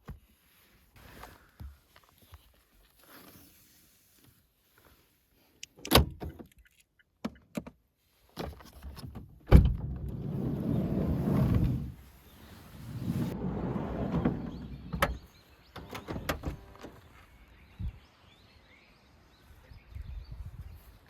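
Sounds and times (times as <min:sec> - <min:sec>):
sliding door motor whirr: 0:12.9 - 0:15.0.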